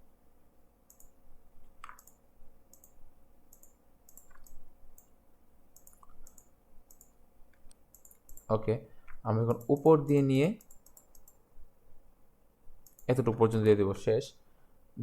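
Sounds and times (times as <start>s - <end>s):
computer mouse button clicking: 1.8s - 5.1s, 7.9s - 8.5s.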